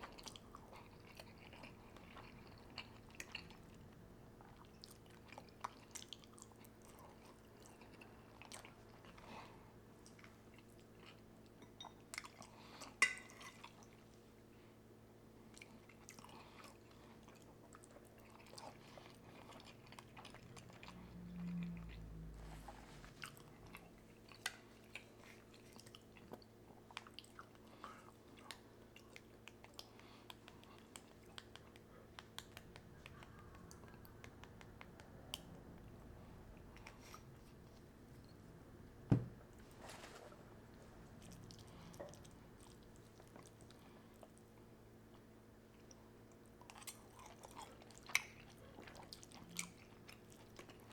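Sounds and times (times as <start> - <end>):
person chewing food: 0.0 - 14.2, 15.5 - 38.7, 40.3 - 50.9
wet mouth clicks: 29.8 - 35.9.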